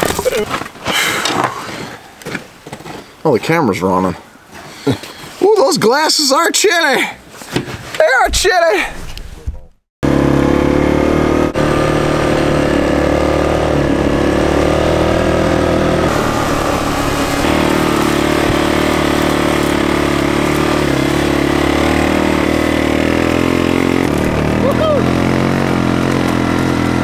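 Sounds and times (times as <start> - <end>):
atv engine running: 10.0 - 27.0.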